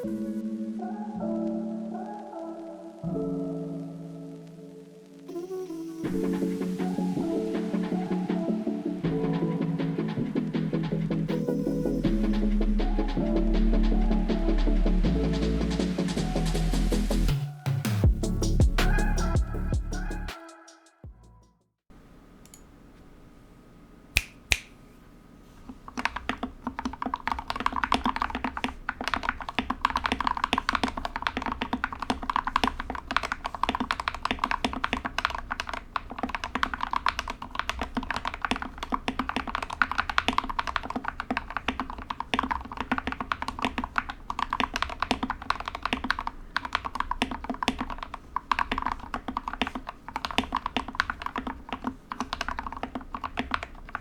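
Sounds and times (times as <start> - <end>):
mechanical keyboard typing: 25.8 - 54.0.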